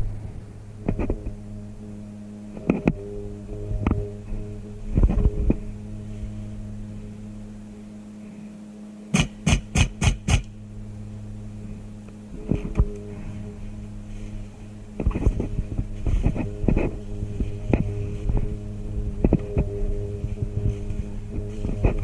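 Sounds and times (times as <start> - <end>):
steady low hum: 0.0 - 22.0
airsoft gun shots: 9.1 - 10.5.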